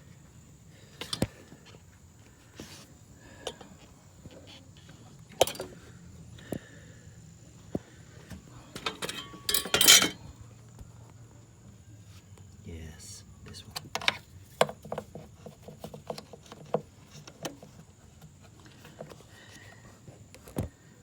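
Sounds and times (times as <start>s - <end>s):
hand tools clinking on metal: 5.3s - 5.8s, 8.7s - 10.2s
metallic rattle: 8.8s - 10.2s.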